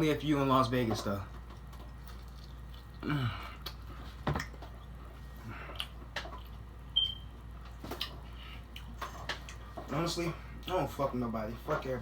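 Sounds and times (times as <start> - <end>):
chewing and lip smacking: 1.4 - 9.7.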